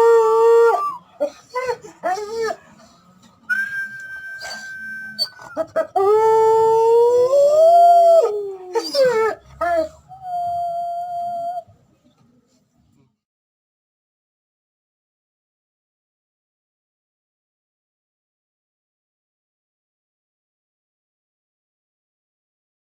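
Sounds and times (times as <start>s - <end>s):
dog howling: 4.4s - 11.6s.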